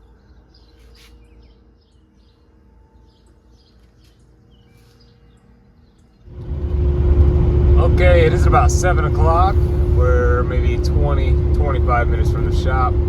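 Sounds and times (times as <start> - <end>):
faint bird chirps: 0.0 - 6.3
low steady hum: 0.0 - 13.0.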